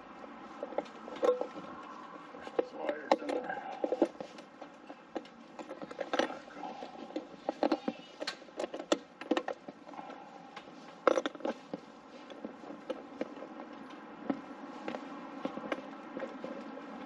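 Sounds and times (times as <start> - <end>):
small parts clicking and knocking: 0.0 - 17.0.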